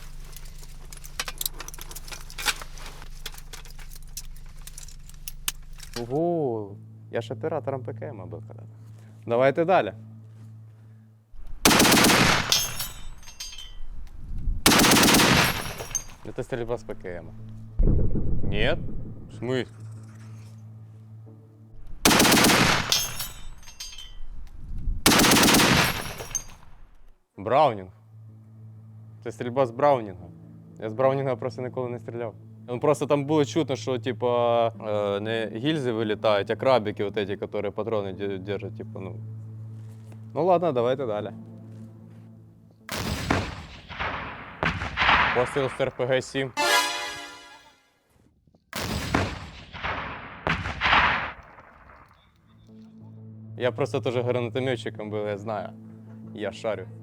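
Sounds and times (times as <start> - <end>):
metallic clicks of ammunition: 0.0 - 6.2, 11.7 - 16.4, 22.1 - 26.8
metallic clinking of belt links: 0.0 - 6.2, 12.3 - 14.3, 15.3 - 16.6, 22.7 - 24.4, 25.8 - 26.8
machine gun bursts: 11.7 - 12.8, 14.7 - 16.2, 22.1 - 23.2, 25.1 - 26.6.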